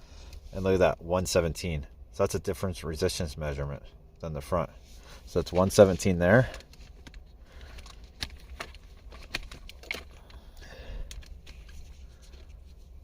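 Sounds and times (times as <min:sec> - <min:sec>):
low steady hum: 0:00.0 - 0:13.0
light clicks and rustles: 0:05.4 - 0:13.0.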